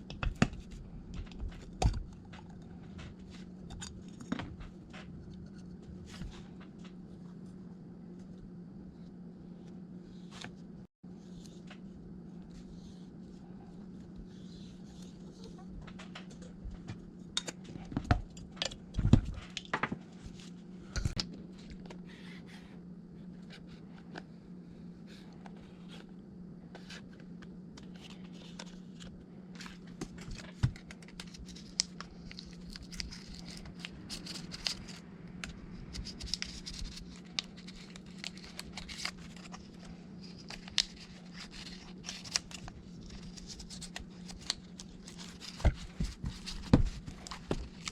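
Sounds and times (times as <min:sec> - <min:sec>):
low steady hum: 0:00.0 - 0:47.9.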